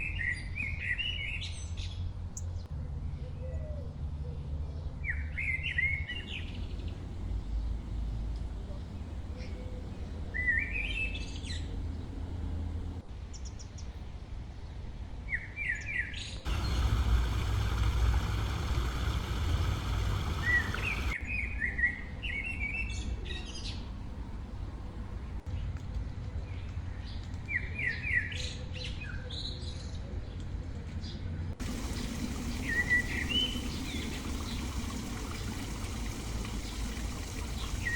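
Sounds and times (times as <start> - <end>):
songbird chirping: 5.2 - 13.0, 16.5 - 25.4, 31.6 - 37.9.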